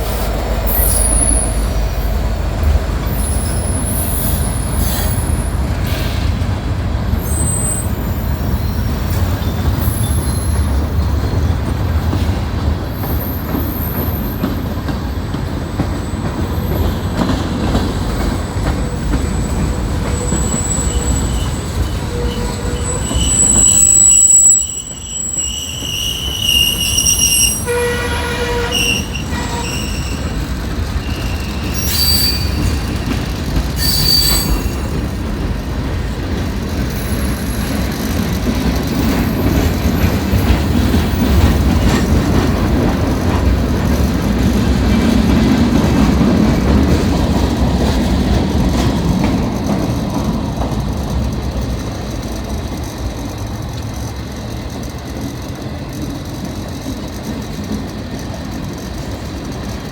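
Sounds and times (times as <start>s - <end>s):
train rumbling by: 0.0s - 59.9s
high-pitched wheel squeal: 3.1s - 5.6s, 7.2s - 10.7s, 19.4s - 33.1s, 33.8s - 35.0s.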